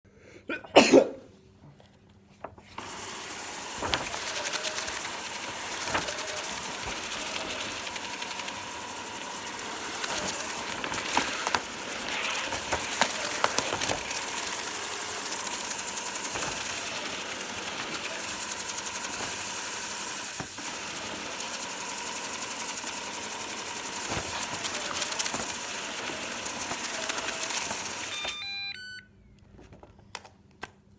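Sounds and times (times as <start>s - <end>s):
robot vacuum running: 2.8s - 28.7s
short beeps: 28.2s - 29.2s.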